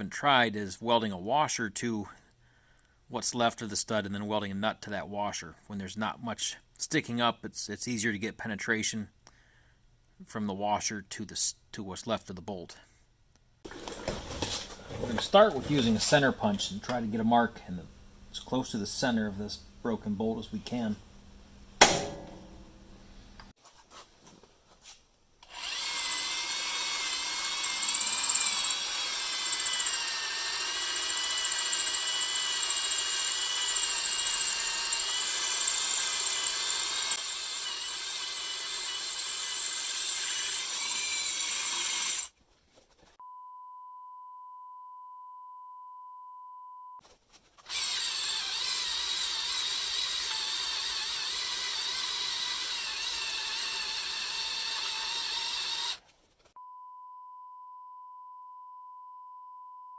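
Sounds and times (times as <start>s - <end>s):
hammer striking punch: 21.8s - 22.8s
power drill squealing into metal: 47.7s - 56.0s.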